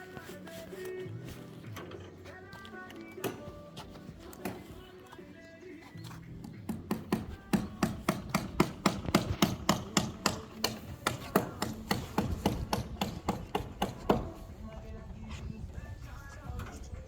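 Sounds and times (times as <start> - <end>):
rapid hammering: 6.6 - 14.3.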